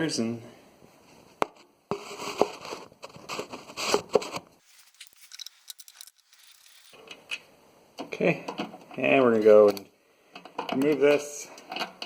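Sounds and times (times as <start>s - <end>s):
metal hand tools clinking: 4.6s - 7.0s.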